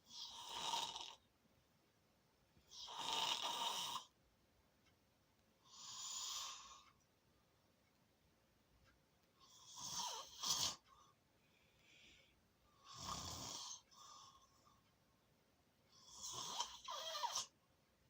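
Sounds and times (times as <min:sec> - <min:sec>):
snoring: 0:00.0 - 0:01.3, 0:02.7 - 0:04.1, 0:05.7 - 0:06.8, 0:09.4 - 0:10.8, 0:12.8 - 0:14.6, 0:15.9 - 0:17.6.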